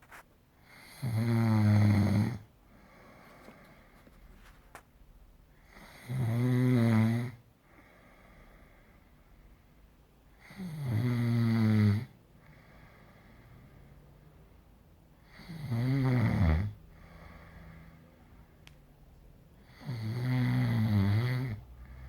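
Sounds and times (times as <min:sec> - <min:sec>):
quiet breathing: 0:00.0 - 0:10.8, 0:11.9 - 0:22.0
loud snoring: 0:00.7 - 0:02.5, 0:05.7 - 0:07.4, 0:10.4 - 0:12.2, 0:15.3 - 0:16.8, 0:19.7 - 0:21.7.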